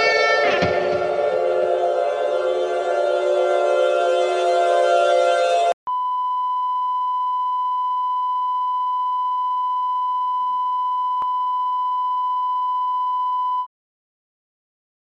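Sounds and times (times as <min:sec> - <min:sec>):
music: 0:00.0 - 0:05.8
steady test tone: 0:00.0 - 0:09.0.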